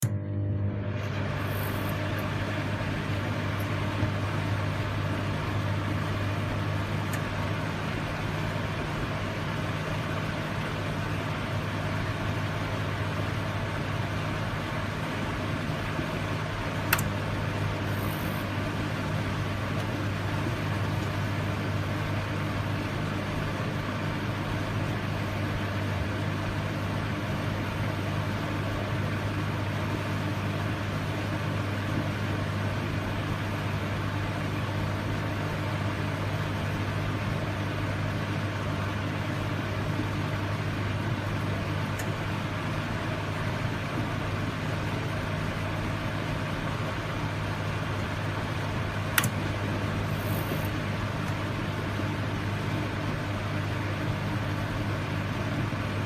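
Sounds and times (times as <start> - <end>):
microwave oven humming: 0.0 - 56.0
sharp click: 16.9 - 17.1, 49.2 - 49.4.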